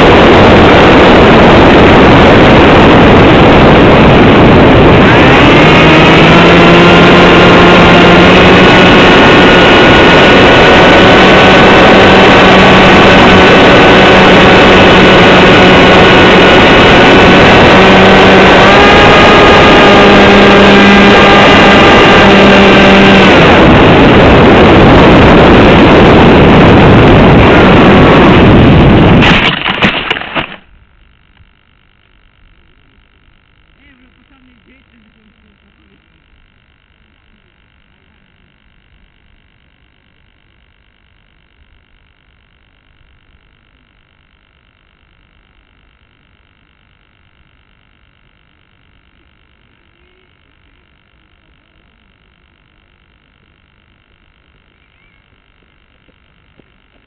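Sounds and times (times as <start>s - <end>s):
electric motor whining: 0.0s - 30.6s
wind rush on microphone: 0.0s - 31.5s.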